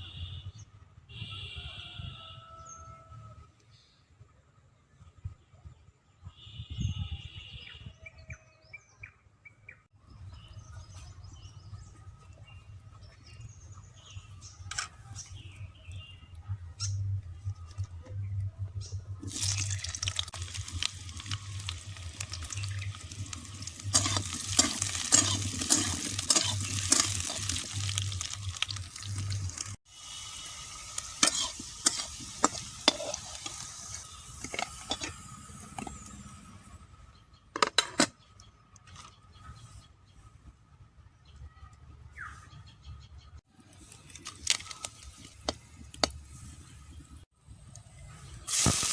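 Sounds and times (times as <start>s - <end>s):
food sizzling in hot oil: 19.2s - 36.4s, 48.4s - 48.9s
spatula clattering and scraping: 23.7s - 28.3s, 31.2s - 35.2s.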